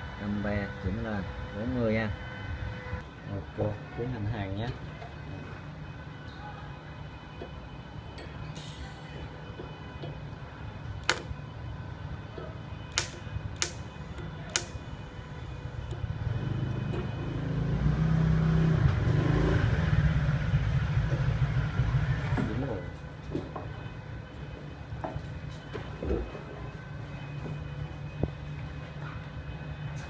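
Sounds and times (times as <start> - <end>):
welder clicks: 11.0 - 11.3, 12.9 - 14.8
welding arc buzzing: 12.9 - 18.3.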